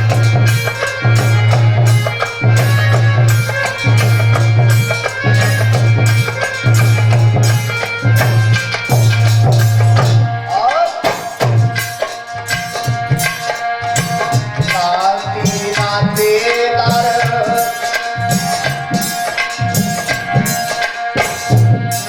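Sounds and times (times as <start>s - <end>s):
sustained melody line: 0.0s - 22.0s
tabla beating: 0.0s - 22.0s.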